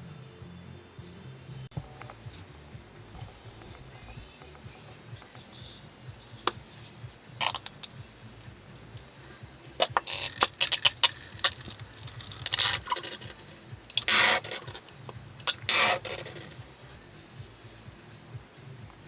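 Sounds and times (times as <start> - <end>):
hands scraping and rustling shrimp: 9.8 - 16.9.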